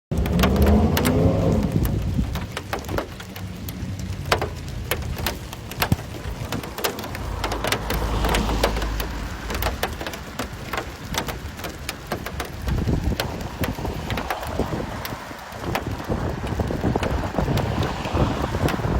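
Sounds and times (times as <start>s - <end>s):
hailstones ticking on hard surfaces: 0.1s - 18.9s
steady patter: 0.1s - 18.9s
low rumble: 3.2s - 18.6s.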